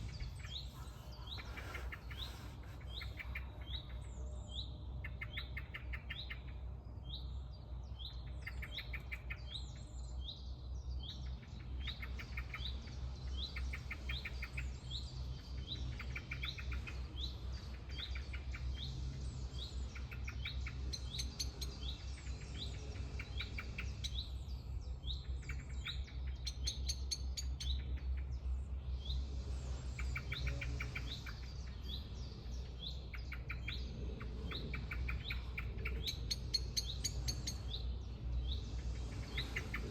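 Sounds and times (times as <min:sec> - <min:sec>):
fast rattling bird trills: 0:00.0 - 0:04.0
steady low rumble: 0:00.0 - 0:06.0, 0:10.0 - 0:39.9.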